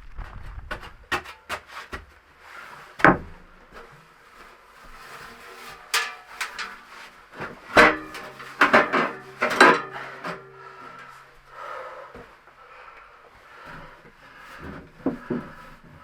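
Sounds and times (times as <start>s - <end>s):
wooden objects knocking and scraping: 5.6s - 11.0s.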